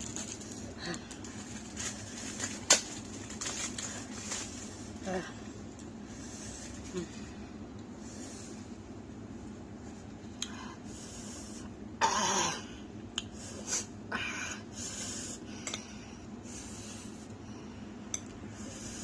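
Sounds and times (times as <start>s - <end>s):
person breathing hard and hissing: 6.0s - 8.8s, 10.4s - 11.8s, 13.3s - 19.0s
person coughing: 12.0s - 12.8s.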